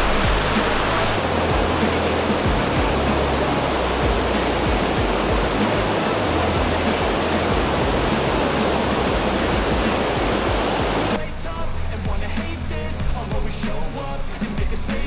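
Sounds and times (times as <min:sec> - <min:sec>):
waterfall pouring: 0:00.0 - 0:11.6
music: 0:00.0 - 0:15.0.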